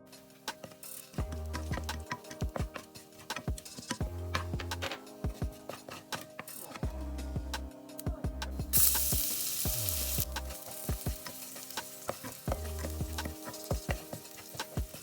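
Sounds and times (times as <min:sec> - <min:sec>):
food sizzling in a hot pan: 0:00.1 - 0:04.0, 0:08.7 - 0:15.0.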